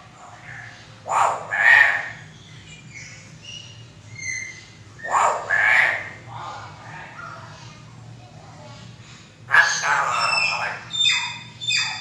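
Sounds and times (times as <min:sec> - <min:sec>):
myna squawking: 0:05.0 - 0:06.2, 0:09.5 - 0:12.0.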